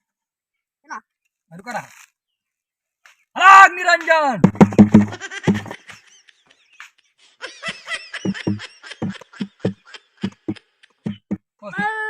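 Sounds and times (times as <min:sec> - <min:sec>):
person laughing: 0:04.9 - 0:06.4, 0:07.4 - 0:11.4.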